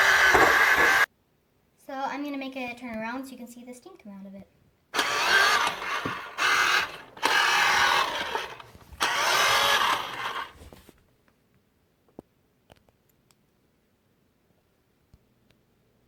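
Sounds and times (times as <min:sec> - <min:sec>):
toy car electric motor whirring: 0:00.0 - 0:01.1, 0:05.0 - 0:10.6.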